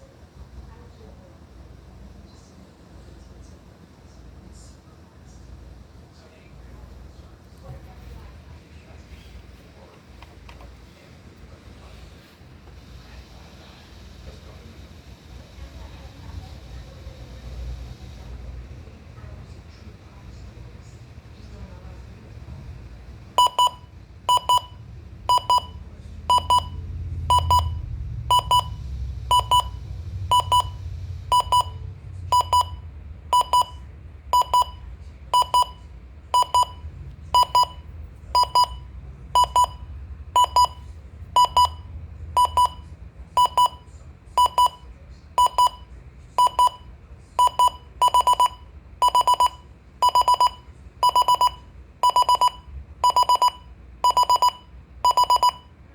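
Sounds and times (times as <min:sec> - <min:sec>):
high electronic alarm beeps: 0:23.4 - 0:32.8, 0:33.4 - 0:33.8, 0:34.4 - 0:34.8, 0:35.4 - 0:35.8, 0:36.4 - 0:36.8, 0:37.4 - 0:37.8, 0:38.4 - 0:39.8, 0:40.4 - 0:40.8, 0:41.4 - 0:41.8, 0:42.4 - 0:42.8, 0:43.4 - 0:43.8, 0:47.4 - 0:55.6.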